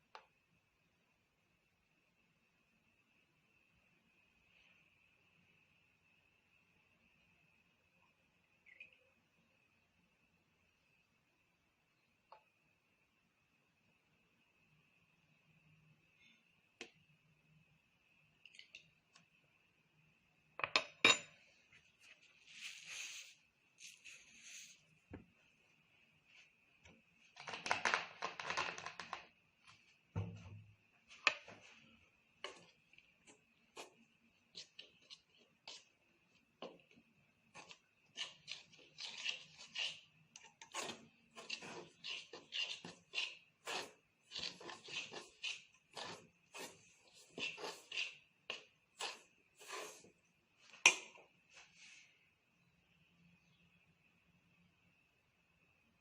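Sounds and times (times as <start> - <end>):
dough being kneaded by hand: 26.2 - 51.8.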